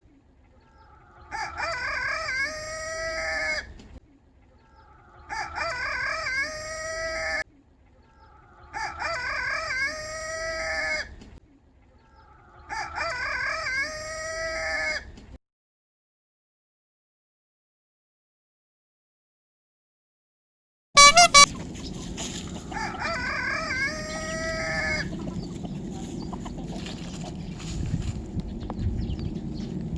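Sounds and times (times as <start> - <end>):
rooster crowing: 1.0 - 3.7, 5.0 - 7.4, 8.3 - 11.1, 12.3 - 15.1, 21.0 - 21.5, 22.7 - 25.4.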